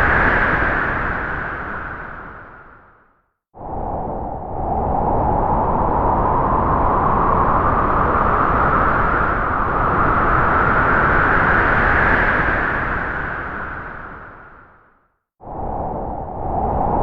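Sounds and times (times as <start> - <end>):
strong gust of wind: 3.6 - 14.5, 15.4 - 17.0.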